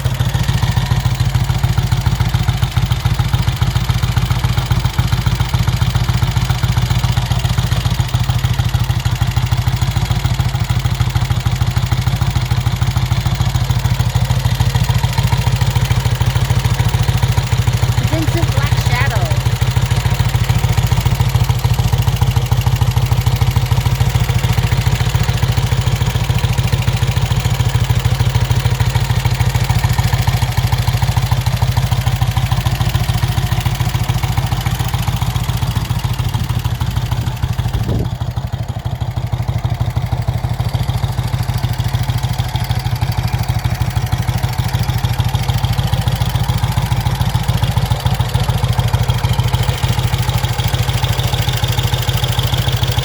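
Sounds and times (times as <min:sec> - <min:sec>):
motorcycle engine idling: 0:00.0 - 0:53.0.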